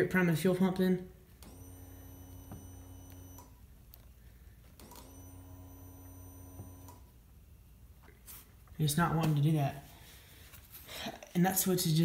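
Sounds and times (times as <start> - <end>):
fuel pump whine: 1.4 - 3.5, 4.8 - 7.1.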